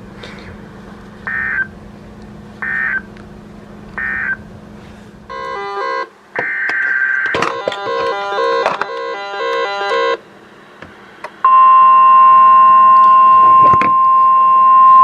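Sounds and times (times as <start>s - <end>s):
steady low hum: 0.0s - 6.4s
dense electronic data tones: 1.3s - 1.7s, 2.6s - 3.1s, 4.0s - 4.4s.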